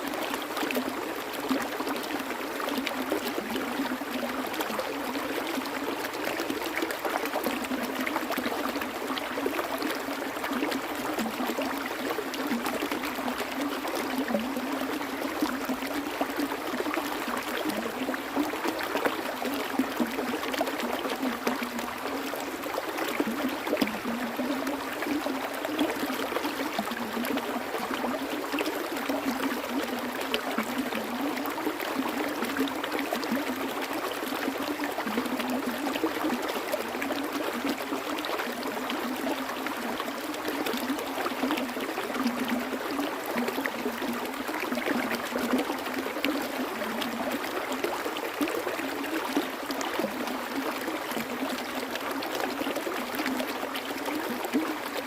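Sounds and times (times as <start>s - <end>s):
stream water flowing and trickling: 0.0s - 55.0s.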